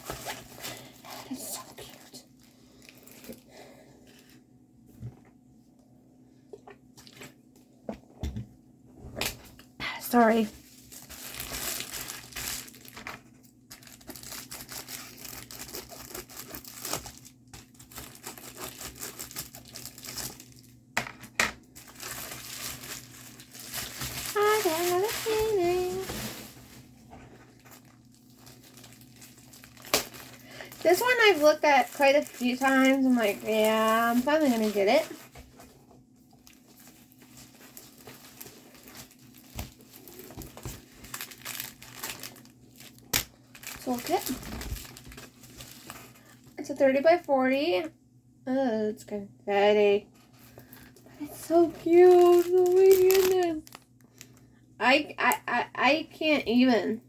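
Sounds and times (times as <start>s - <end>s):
plastic packaging crinkling: 0.0s - 4.4s, 10.0s - 46.6s, 50.3s - 54.5s.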